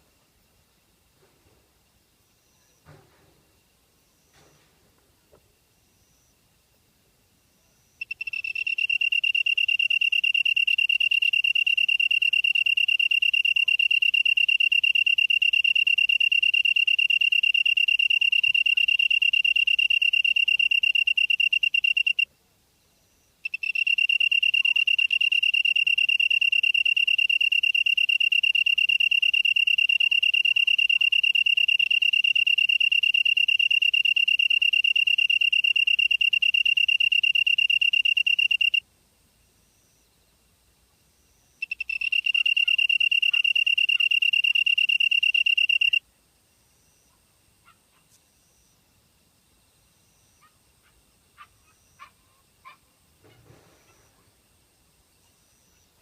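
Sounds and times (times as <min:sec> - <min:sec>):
cricket trilling: 0:07.5 - 0:22.3, 0:23.0 - 0:38.8, 0:41.2 - 0:52.8.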